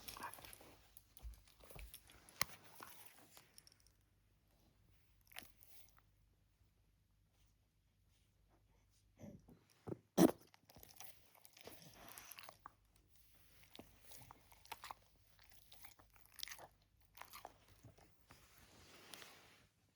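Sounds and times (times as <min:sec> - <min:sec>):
pet crunching and chewing food: 0:00.0 - 0:03.9, 0:10.2 - 0:19.3.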